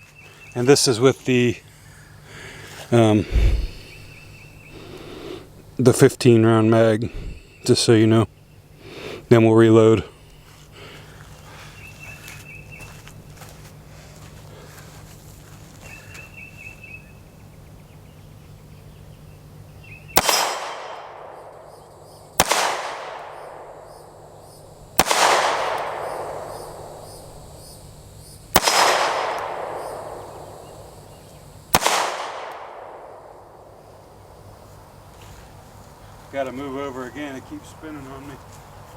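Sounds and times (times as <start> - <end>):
pistol shots echoing: 20.2 - 24.4, 25.0 - 27.5, 28.5 - 30.9, 31.7 - 33.8.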